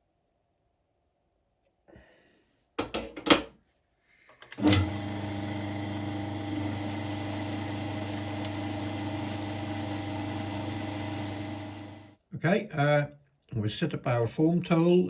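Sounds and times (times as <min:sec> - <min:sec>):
lathe motor humming: 0:04.6 - 0:12.2.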